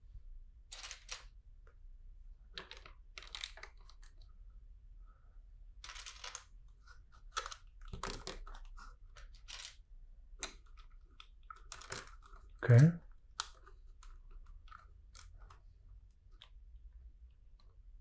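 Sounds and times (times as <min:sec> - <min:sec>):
plastic bricks clicking and rattling: 0:02.5 - 0:04.2, 0:05.8 - 0:06.5, 0:07.3 - 0:09.8, 0:10.4 - 0:12.6.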